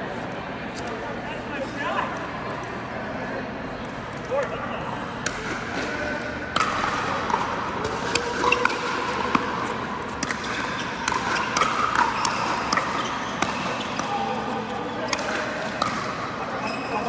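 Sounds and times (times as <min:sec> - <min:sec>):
paddles hitting plastic ball: 0:05.2 - 0:16.8
ball bouncing on court: 0:05.2 - 0:17.0.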